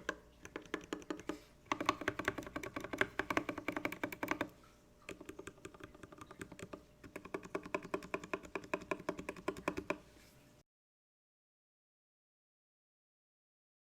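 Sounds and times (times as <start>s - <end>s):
typing on mechanical keyboard: 0.0s - 4.5s, 5.1s - 10.0s.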